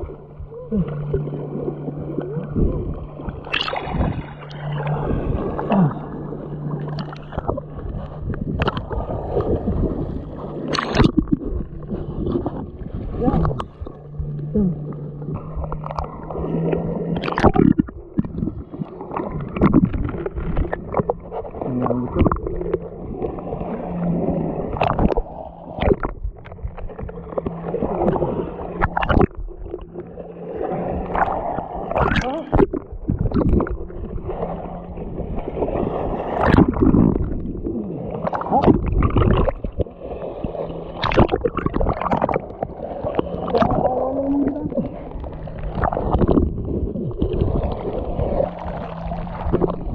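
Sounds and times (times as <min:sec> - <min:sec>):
low hum: 0:00.0 - 0:49.9
sea water sloshing and splashing: 0:00.0 - 0:49.9.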